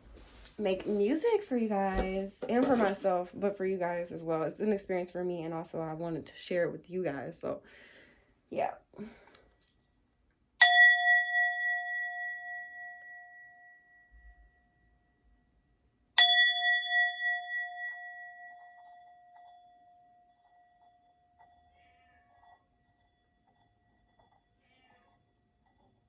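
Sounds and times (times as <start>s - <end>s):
singing bowl ringing: 10.6s - 15.2s, 16.2s - 23.2s.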